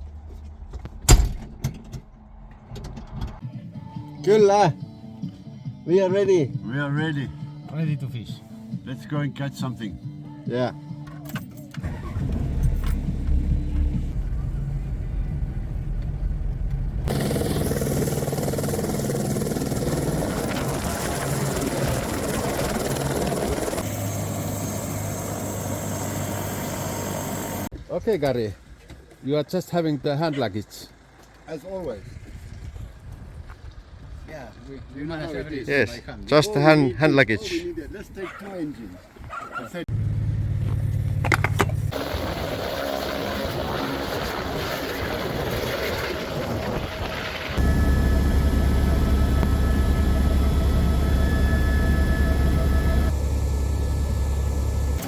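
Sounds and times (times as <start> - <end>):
helicopter engine and rotor noise: 17.1 - 27.7, 41.2 - 55.0.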